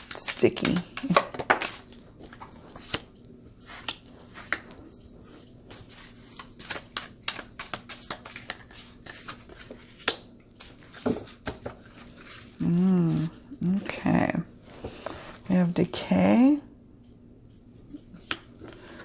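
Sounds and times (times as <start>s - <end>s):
cards being shuffled: 0.0s - 4.8s, 5.7s - 13.4s.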